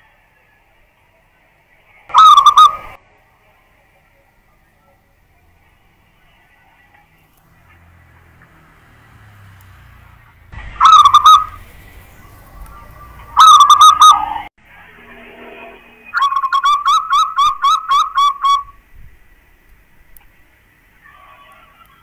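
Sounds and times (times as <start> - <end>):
dove cooing: 2.1 - 3.0, 10.6 - 14.5.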